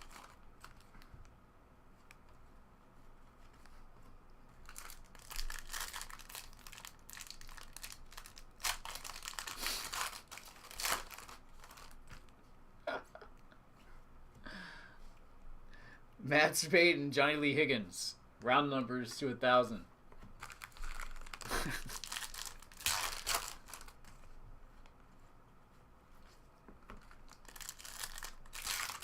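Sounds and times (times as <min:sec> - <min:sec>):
foil wrapper crinkling and tearing: 0:00.0 - 0:01.1, 0:04.6 - 0:12.3, 0:20.4 - 0:24.1, 0:27.0 - 0:29.0.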